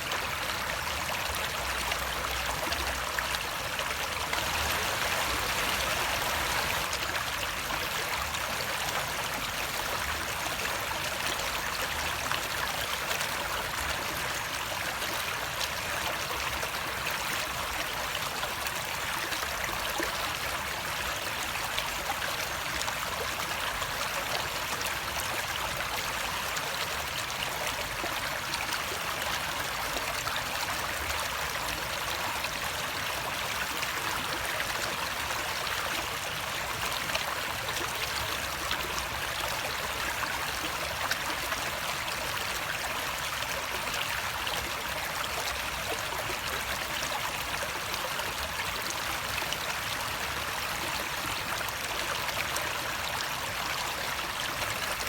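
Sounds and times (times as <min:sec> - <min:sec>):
water rushing: 0:02.9 - 0:07.7.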